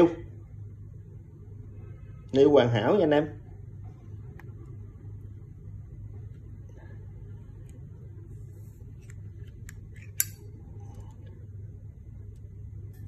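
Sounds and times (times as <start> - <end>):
steady low hum: 0.0 - 13.0
lighter lid metallic clicks: 10.0 - 10.4.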